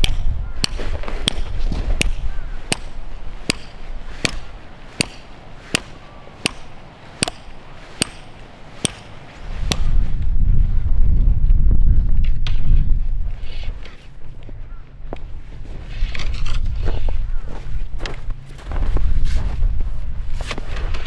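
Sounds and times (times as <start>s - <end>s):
sharp knocks: 0.0s - 10.0s.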